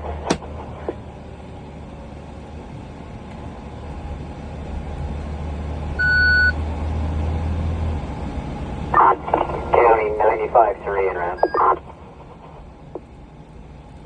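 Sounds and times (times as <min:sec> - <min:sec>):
fire engine engine running: 0:00.0 - 0:14.0
high electronic beep: 0:06.0 - 0:06.6, 0:11.4 - 0:11.6.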